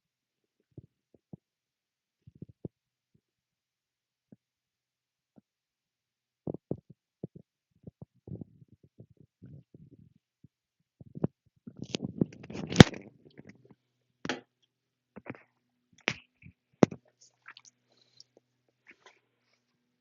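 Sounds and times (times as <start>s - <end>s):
mouth clicks: 16.0s - 19.1s.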